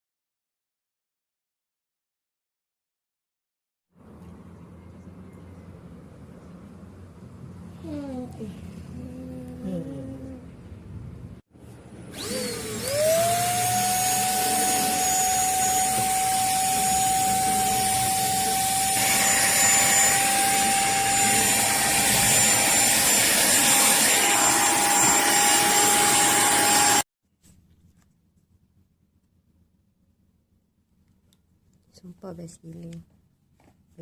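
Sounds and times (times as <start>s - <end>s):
vacuum cleaner motor whine: 12.1s - 27.0s.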